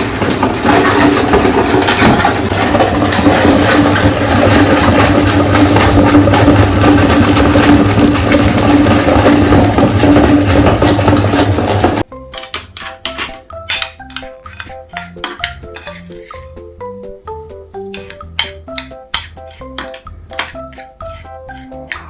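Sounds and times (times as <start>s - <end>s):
meat grinder motor hum: 0.0s - 12.1s
hard candy crunching: 0.0s - 16.3s.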